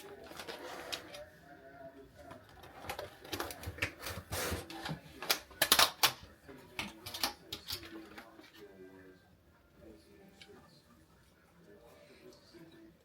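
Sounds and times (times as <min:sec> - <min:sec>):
objects being handled: 0:00.0 - 0:01.3.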